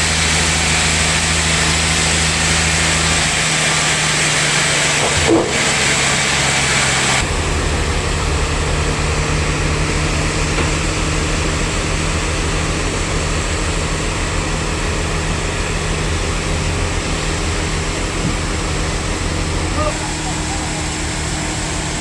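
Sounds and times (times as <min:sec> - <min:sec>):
sawmill machinery humming: 0:00.0 - 0:22.0.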